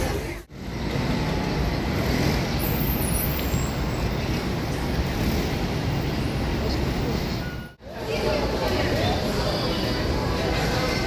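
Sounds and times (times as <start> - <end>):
city street traffic rumble: 0.0 - 11.0.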